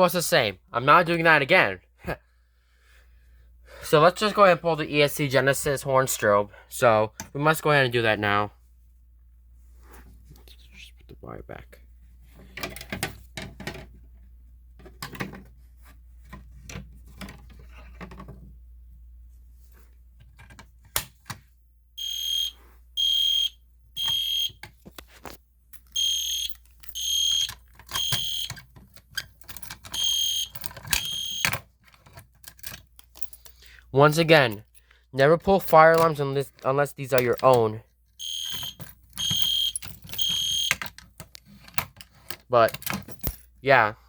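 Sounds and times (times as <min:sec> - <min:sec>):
fire alarm beeping: 0:22.0 - 0:24.6, 0:26.0 - 0:28.6, 0:30.0 - 0:31.6, 0:38.2 - 0:40.8.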